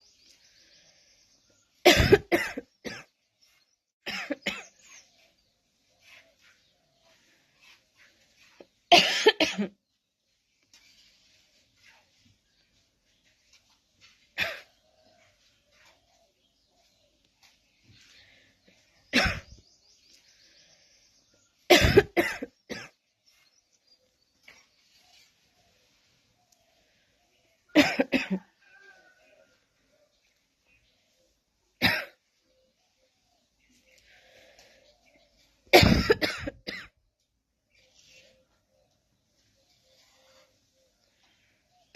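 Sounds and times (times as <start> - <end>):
person coughing: 1.9 - 3.1, 8.9 - 9.7, 14.4 - 14.7, 19.2 - 19.5, 21.7 - 22.9, 27.8 - 28.4, 31.8 - 32.2, 35.7 - 36.9.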